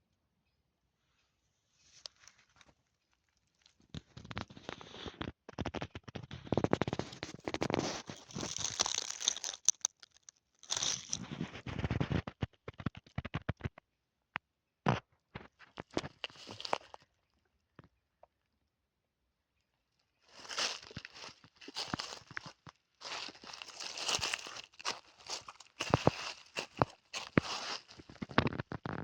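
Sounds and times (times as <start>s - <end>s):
dry leaves rustling and crunching: 6.8s - 10.0s, 10.6s - 11.3s, 16.3s - 17.0s, 20.3s - 28.3s.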